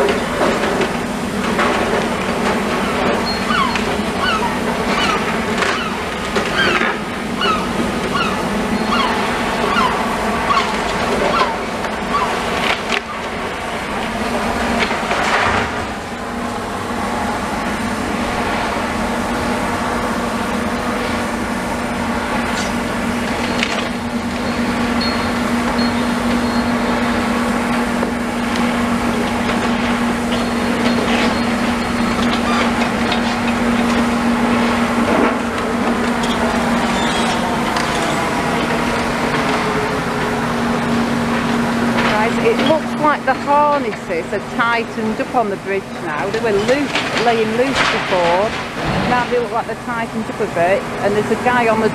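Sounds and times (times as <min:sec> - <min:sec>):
timber and rubble cracking: 0:00.0 - 0:04.2, 0:46.2 - 0:49.5
heavy machine engine droning: 0:00.0 - 0:51.9.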